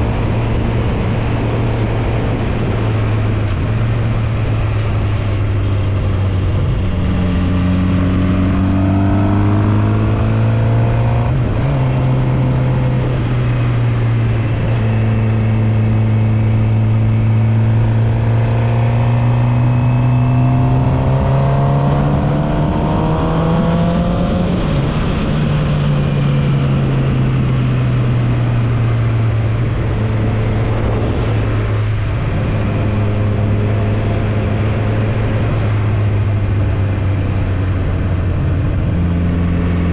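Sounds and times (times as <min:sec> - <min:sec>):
motorcycle engine revving: 0:00.0 - 0:39.9
wind and road noise: 0:00.0 - 0:39.9.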